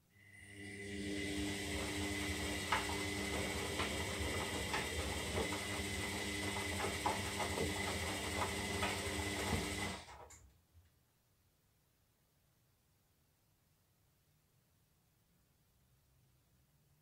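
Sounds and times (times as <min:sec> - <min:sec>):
washing machine motor hum: 0:00.2 - 0:10.4.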